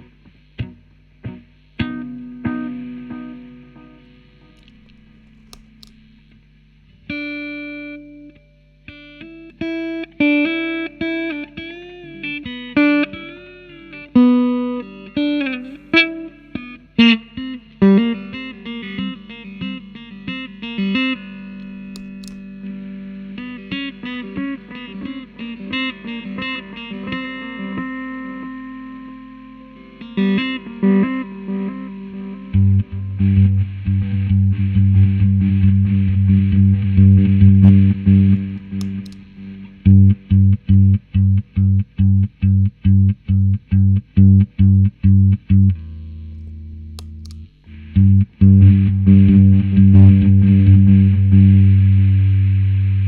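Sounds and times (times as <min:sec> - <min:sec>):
steady low hum: 0:03.7 - 0:07.1, 0:36.4 - 0:53.0
electric guitar notes: 0:07.1 - 0:53.0.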